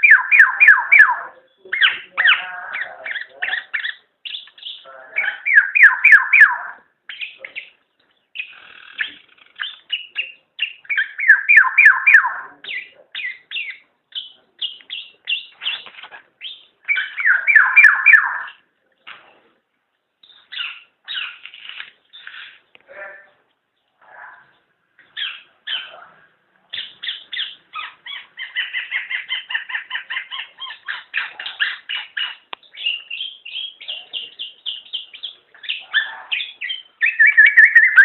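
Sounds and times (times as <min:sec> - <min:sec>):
oriole calling: 0:00.0 - 0:07.8, 0:08.4 - 0:18.7, 0:24.1 - 0:38.0.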